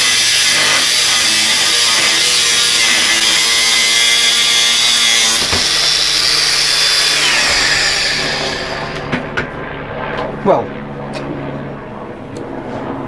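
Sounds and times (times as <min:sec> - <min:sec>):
angle grinder cutting steel: 0:00.0 - 0:09.2.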